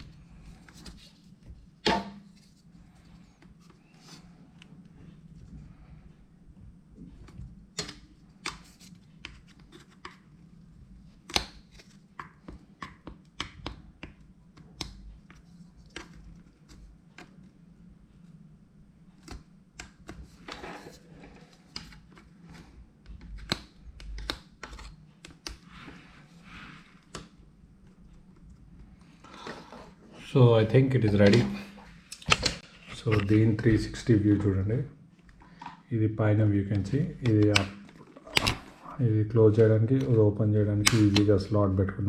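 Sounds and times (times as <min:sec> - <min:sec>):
low steady hum: 0:00.0 - 0:42.0.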